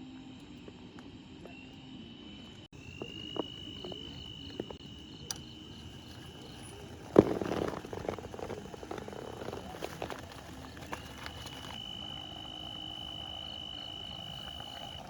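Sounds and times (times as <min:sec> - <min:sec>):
rustling: 0:03.4 - 0:15.0
high-pitched insect trill: 0:09.2 - 0:15.0.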